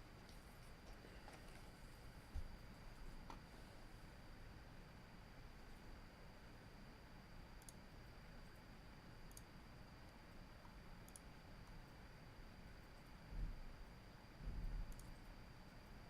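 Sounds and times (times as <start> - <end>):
faint high whine: 0.0 - 16.0
faint mouse clicks: 7.6 - 7.8, 9.3 - 9.5, 10.1 - 11.8, 14.9 - 16.0.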